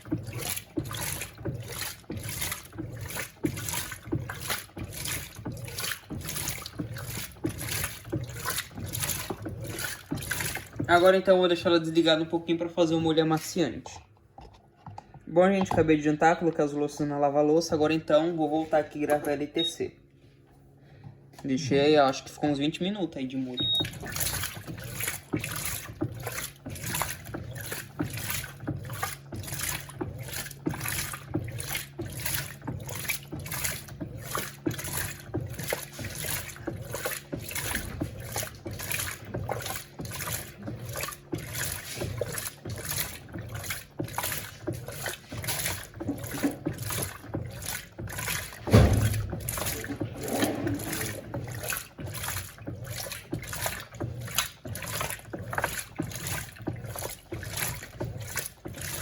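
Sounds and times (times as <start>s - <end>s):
washing machine motor hum: 0.0s - 59.0s
water sloshing: 0.0s - 59.0s
loud thump: 48.7s - 49.5s.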